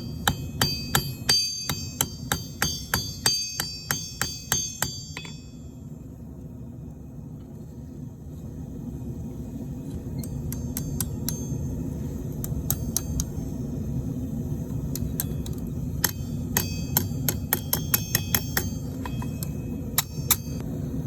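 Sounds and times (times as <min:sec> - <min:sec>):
hammer ringing on anvil: 0:00.0 - 0:05.7, 0:10.5 - 0:11.8, 0:16.0 - 0:20.6.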